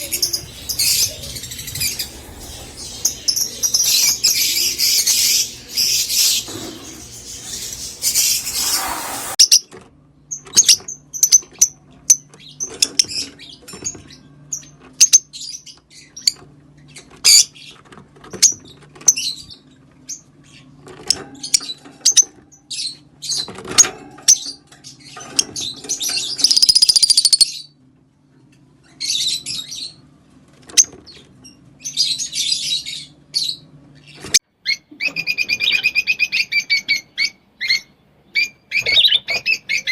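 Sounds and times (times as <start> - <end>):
faint low hum: 0.0 - 8.6
lovebirds chirping and chattering: 0.0 - 9.6, 10.3 - 27.8, 30.7 - 39.9.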